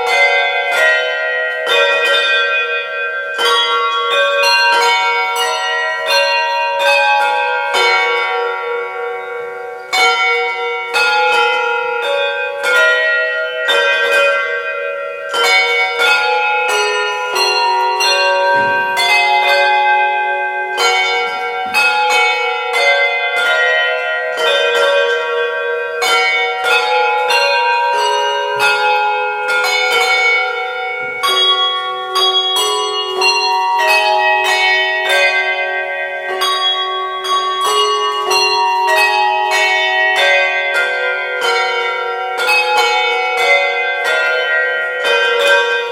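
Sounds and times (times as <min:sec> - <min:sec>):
handbell choir playing: 0:00.0 - 0:45.9.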